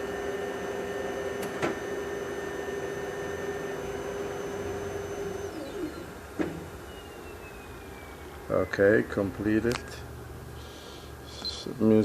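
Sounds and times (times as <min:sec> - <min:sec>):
falling motor whine: 0:00.0 - 0:08.5
copier motors humming: 0:00.0 - 0:12.0.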